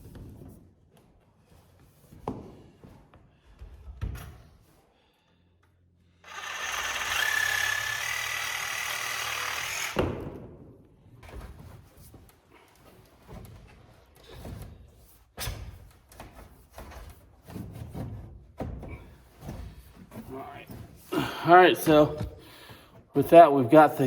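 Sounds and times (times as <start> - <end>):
power tool motor whining: 6.2 - 10.2.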